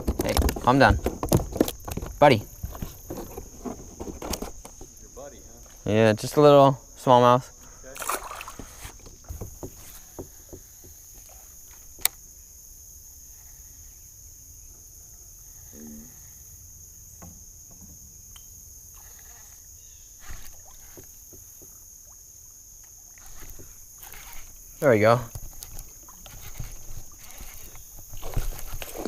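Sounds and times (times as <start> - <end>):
knocks and clicks in a kayak: 0.0 - 5.8, 8.0 - 12.2, 20.3 - 22.2, 22.8 - 29.0
insects droning: 0.0 - 29.0.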